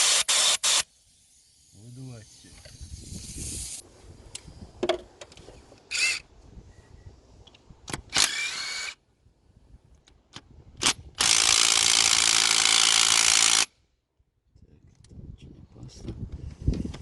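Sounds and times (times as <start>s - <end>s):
compressed air blasts: 0.0s - 4.6s.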